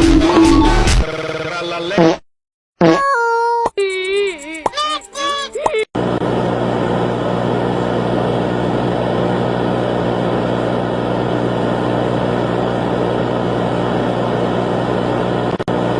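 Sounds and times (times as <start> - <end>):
loud engine-like drone: 6.0 - 15.9.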